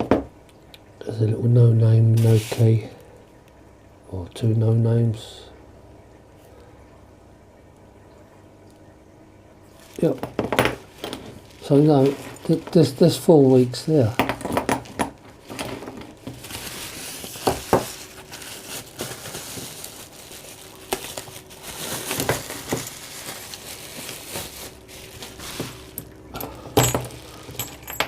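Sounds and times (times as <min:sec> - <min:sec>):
packaging crinkling: 0:10.8 - 0:13.8, 0:14.8 - 0:28.0
metal padlocks clicking and knocking: 0:26.6 - 0:28.0.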